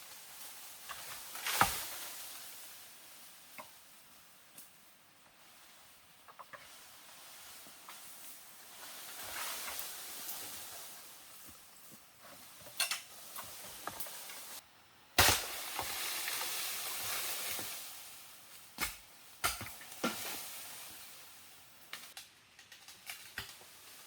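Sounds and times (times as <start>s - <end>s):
food sizzling in a pan: 0.0s - 4.6s, 12.5s - 14.6s, 15.2s - 18.6s.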